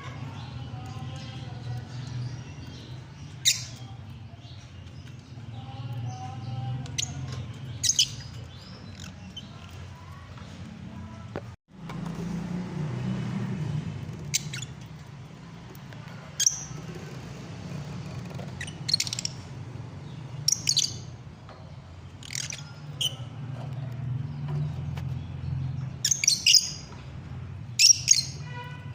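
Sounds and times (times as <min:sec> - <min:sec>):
birds chirping: 0:00.0 - 0:11.6, 0:13.2 - 0:28.9.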